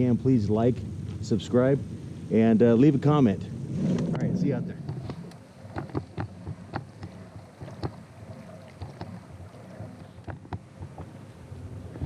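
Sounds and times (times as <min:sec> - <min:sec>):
water slapping against hull: 0:04.8 - 0:11.3.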